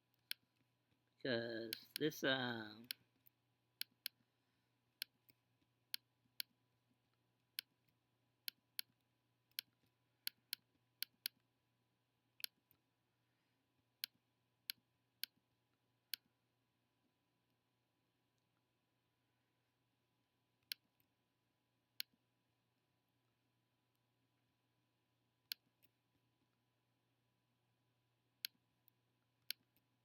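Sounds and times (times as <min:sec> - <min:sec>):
computer mouse clicking: 0:02.8 - 0:04.2, 0:07.4 - 0:11.5, 0:20.6 - 0:21.1.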